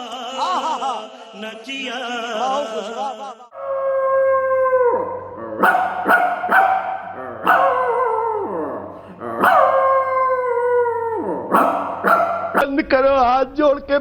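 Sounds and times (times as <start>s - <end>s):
man imitating dog howling: 3.5s - 12.7s.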